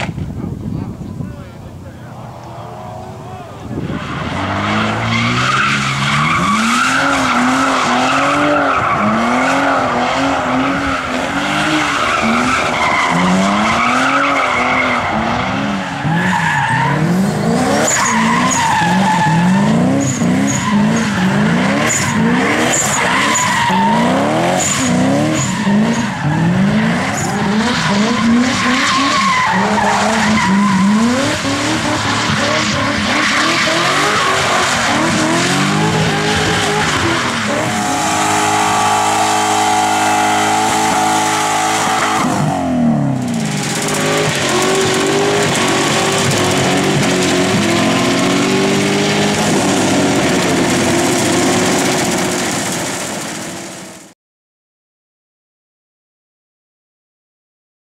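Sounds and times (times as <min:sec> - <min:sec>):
rally car engine revving: 0:01.7 - 0:54.1
tyre squeals: 0:02.2 - 0:42.7.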